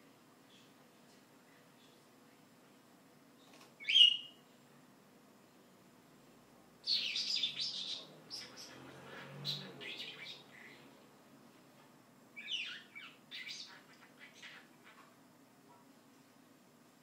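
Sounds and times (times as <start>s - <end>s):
pet bird chattering and warbling: 12.4s - 15.1s.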